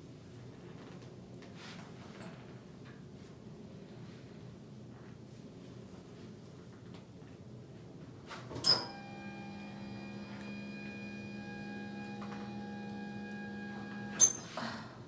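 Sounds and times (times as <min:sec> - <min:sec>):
small electric motor humming: 0:08.9 - 0:14.5.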